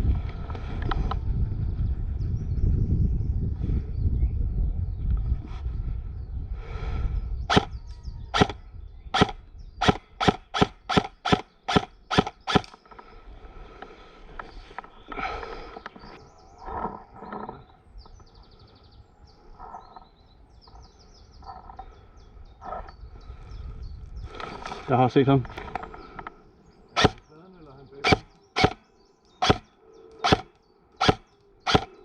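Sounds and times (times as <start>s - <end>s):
faint bird chirps: 7.0s - 13.4s, 14.3s - 32.0s
airsoft rifle shots cracking: 7.5s - 7.7s, 8.4s - 8.6s, 9.2s - 12.8s, 27.0s - 27.2s, 28.0s - 28.8s, 29.4s - 32.0s.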